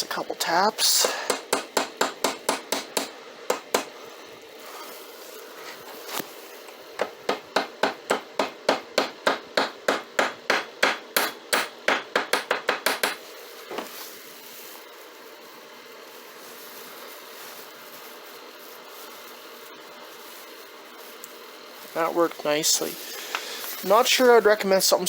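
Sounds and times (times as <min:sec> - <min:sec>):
hammer tapping metal punch: 0:01.3 - 0:03.9, 0:07.0 - 0:13.2.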